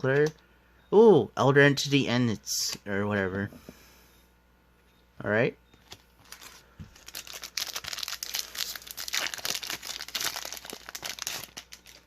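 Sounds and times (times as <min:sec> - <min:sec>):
foil wrapper crinkling: 0:05.9 - 0:12.0.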